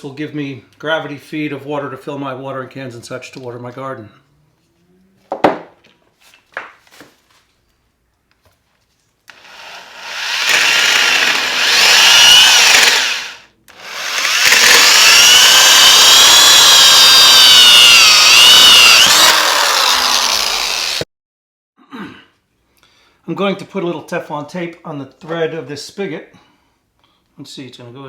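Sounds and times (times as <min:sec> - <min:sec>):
drill hole saw cutting plastic: 0:09.3 - 0:21.1.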